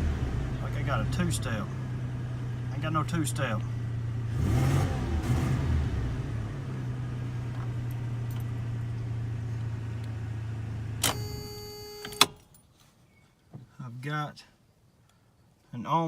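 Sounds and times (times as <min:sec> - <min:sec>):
truck engine revving and idling: 0:00.0 - 0:11.0
ignition switch click: 0:11.0 - 0:12.4.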